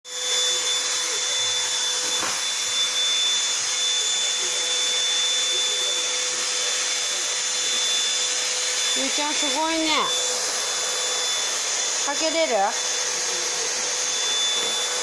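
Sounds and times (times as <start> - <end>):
vacuum cleaner running: 0.1 - 15.0.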